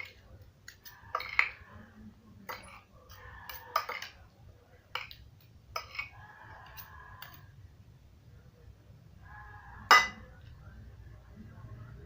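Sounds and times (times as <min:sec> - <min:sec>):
cutlery clinking on a plate: 0:00.0 - 0:01.6, 0:02.4 - 0:02.9, 0:03.5 - 0:04.2, 0:04.9 - 0:07.4, 0:09.9 - 0:10.3.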